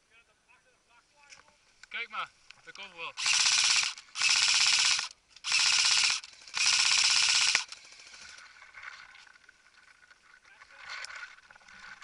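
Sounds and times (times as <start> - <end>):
airsoft gun rapid shots: 3.2 - 8.3.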